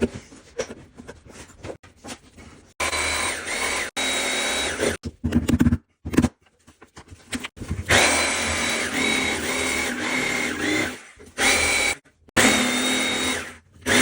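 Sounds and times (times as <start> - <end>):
power tool whining: 2.8 - 5.0, 7.9 - 14.0.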